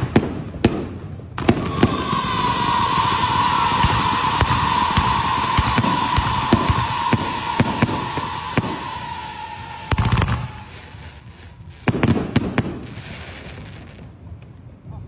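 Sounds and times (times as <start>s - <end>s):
firecrackers banging: 0.0s - 14.5s
steady whistle: 1.4s - 11.3s
hiss: 1.6s - 11.9s.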